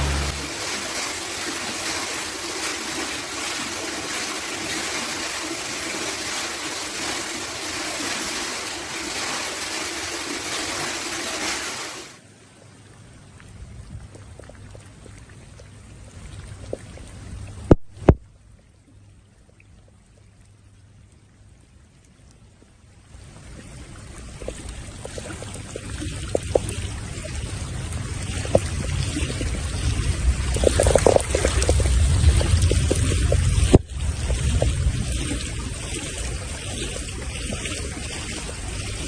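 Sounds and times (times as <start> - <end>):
low hum: 0.0 - 1.4
floodwater rushing: 0.0 - 12.2, 23.2 - 39.0.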